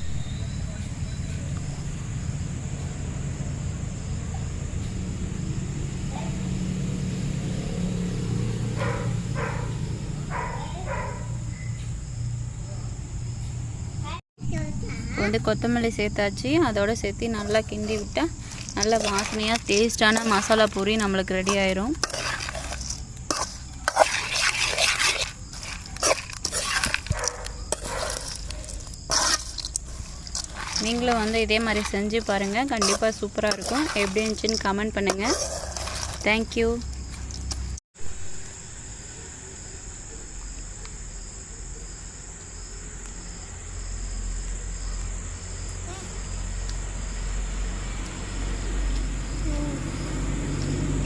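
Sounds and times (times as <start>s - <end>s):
dog barking: 6.1s - 6.4s, 8.7s - 11.4s, 27.1s - 28.8s
spoon scraping a bowl: 17.3s - 36.5s
puffed rice rustling and crunching: 17.4s - 37.6s.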